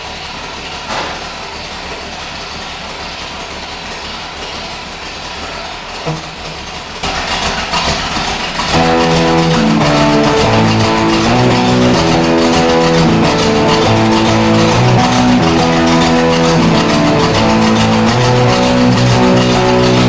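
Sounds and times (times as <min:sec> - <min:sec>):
guitar music: 0:08.7 - 0:20.0.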